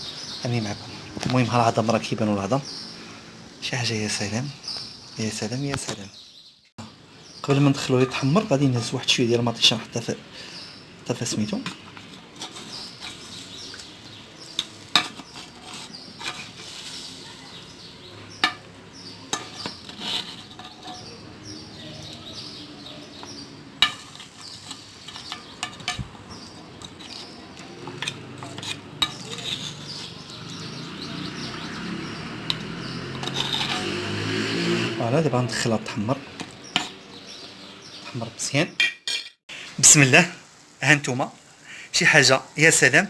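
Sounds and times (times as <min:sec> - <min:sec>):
dishes and cutlery clinking: 0:07.7 - 0:09.0, 0:11.4 - 0:34.3, 0:36.3 - 0:38.2
faint hiss: 0:39.5 - 0:43.0.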